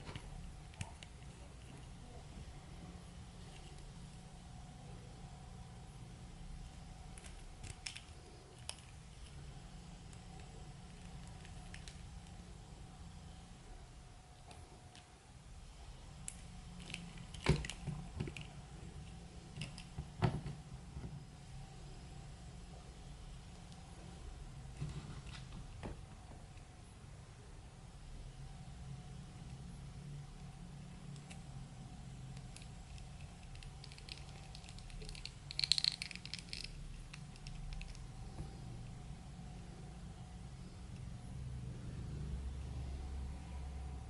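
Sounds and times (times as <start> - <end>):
steady low hum: 0.0 - 44.0.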